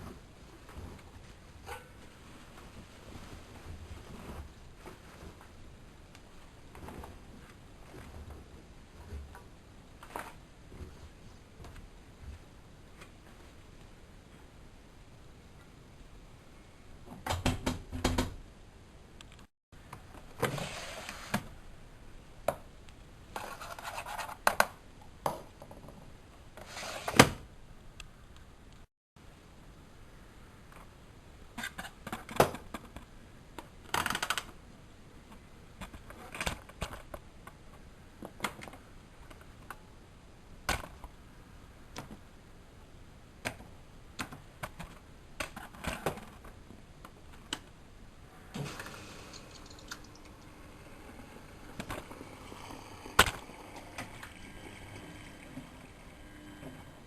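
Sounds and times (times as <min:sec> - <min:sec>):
washing machine clicks and knocks: 0:17.1 - 0:18.4
washing machine low hum: 0:48.2 - 0:57.0.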